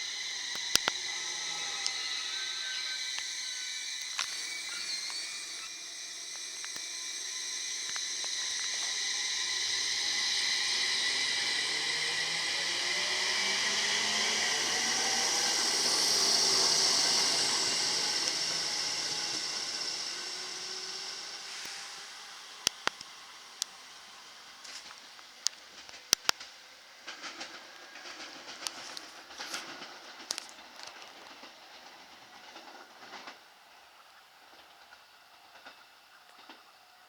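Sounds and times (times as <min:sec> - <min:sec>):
high steady tones: 0:00.0 - 0:26.4
lower sliding tones: 0:00.0 - 0:31.0
train passing: 0:00.0 - 0:37.0.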